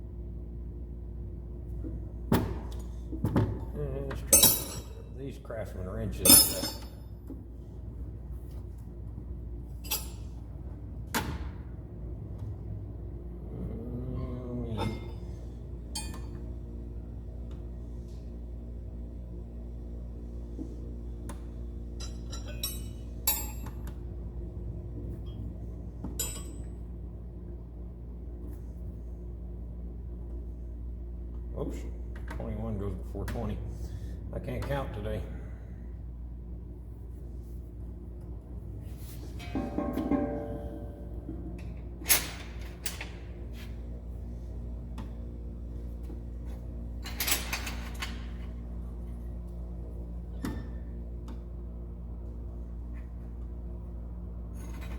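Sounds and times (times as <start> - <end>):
steady low hum: 0.0 - 54.9
metal wrenches clinking: 4.3 - 5.0, 6.2 - 7.0.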